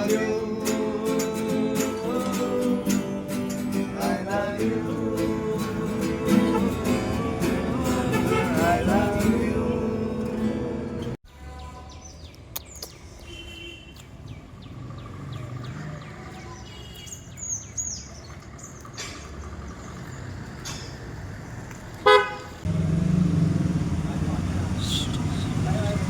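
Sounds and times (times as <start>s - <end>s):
song with guitar: 0.0s - 11.1s
small birds chirping: 11.6s - 21.0s, 24.2s - 26.0s.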